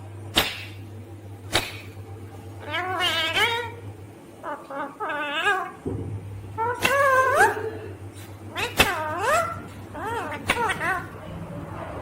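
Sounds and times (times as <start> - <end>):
parrot mewing calls: 2.6 - 3.8, 4.4 - 5.8, 6.6 - 11.2.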